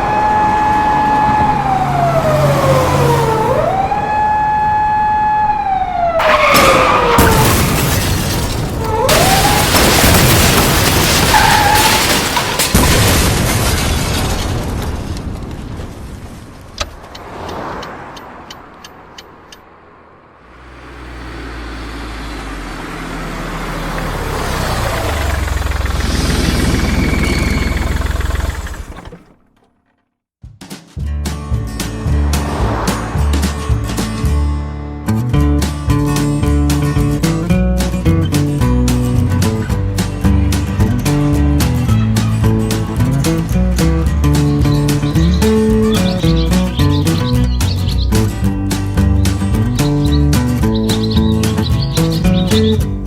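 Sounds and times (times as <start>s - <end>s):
police siren wailing: 0.0s - 7.8s, 8.8s - 12.2s
loud crashing and banging: 6.2s - 16.6s.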